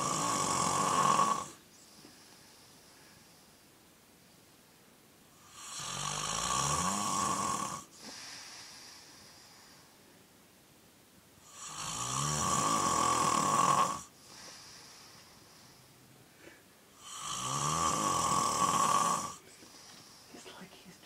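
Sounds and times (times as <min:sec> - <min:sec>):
man snoring: 0:00.0 - 0:01.6, 0:05.4 - 0:09.1, 0:11.4 - 0:15.1, 0:17.0 - 0:20.3
quiet breathing: 0:00.0 - 0:04.7, 0:07.8 - 0:10.4, 0:12.7 - 0:21.0.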